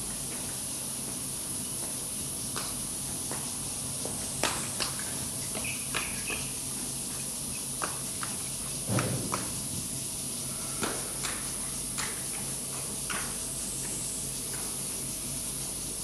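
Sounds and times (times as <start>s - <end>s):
sharp knocks: 8.9s - 9.7s.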